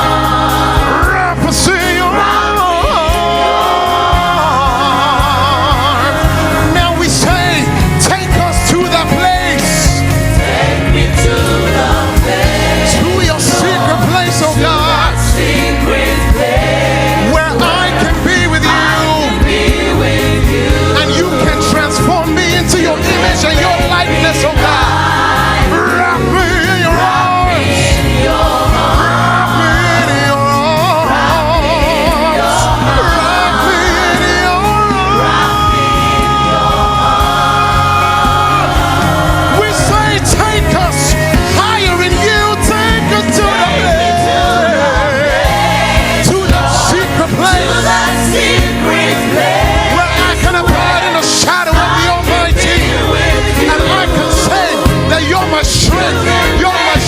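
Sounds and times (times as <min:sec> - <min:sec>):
instrumental accompaniment with bass: 0:00.0 - 0:57.0
voices singing with vibrato: 0:00.0 - 0:57.0.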